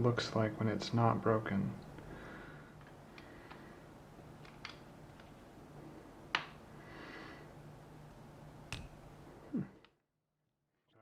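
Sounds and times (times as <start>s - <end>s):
low steady hum: 0.0s - 10.0s
small clicks of parts handled: 4.4s - 5.4s.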